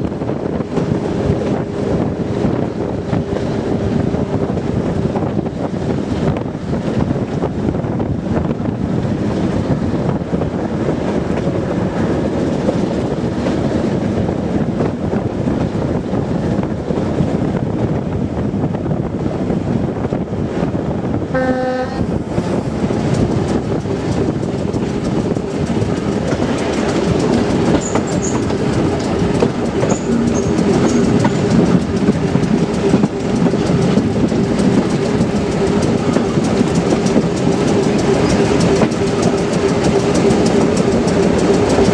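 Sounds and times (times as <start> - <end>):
diesel train engine: 0.0 - 41.9
train horn blast: 21.3 - 22.8, 29.8 - 31.9
train wheels clattering: 21.4 - 41.9
low hum: 28.3 - 34.1.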